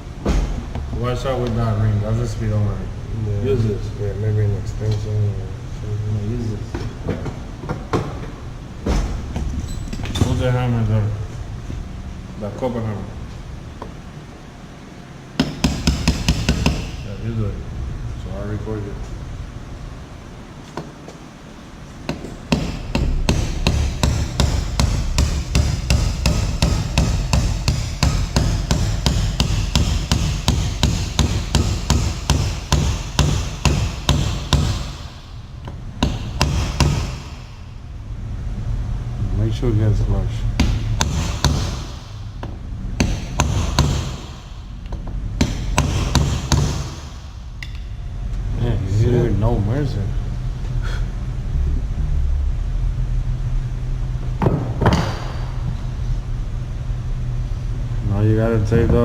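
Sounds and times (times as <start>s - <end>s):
hammer striking metal: 15.4s - 17.1s, 22.1s - 35.4s, 36.0s - 37.6s, 40.6s - 44.6s, 45.4s - 48.0s.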